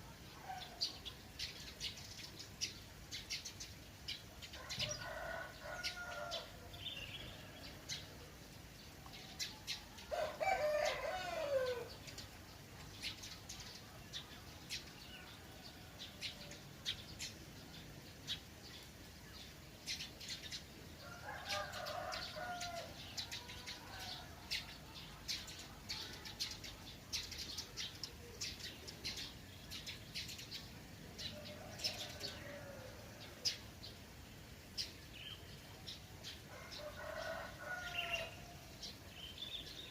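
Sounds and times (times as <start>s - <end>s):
small birds chirping: 0.0s - 39.9s
roosters crowing: 4.6s - 7.9s, 10.1s - 12.0s, 21.0s - 24.6s, 31.2s - 33.5s, 36.5s - 39.0s.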